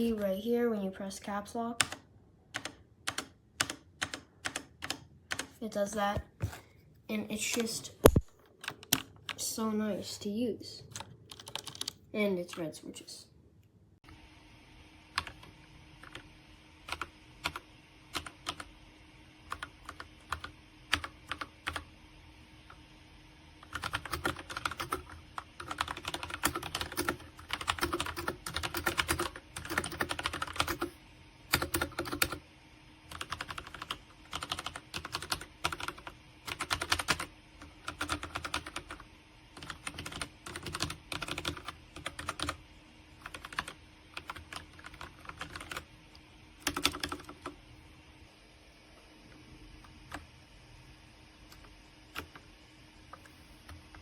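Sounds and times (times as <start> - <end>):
typing on mechanical keyboard: 1.8 - 5.6, 7.5 - 9.4, 10.9 - 12.0, 16.9 - 18.7, 19.5 - 21.8, 23.6 - 30.9, 31.5 - 32.4, 33.1 - 39.0, 39.6 - 42.6, 43.2 - 45.9, 46.6 - 47.6.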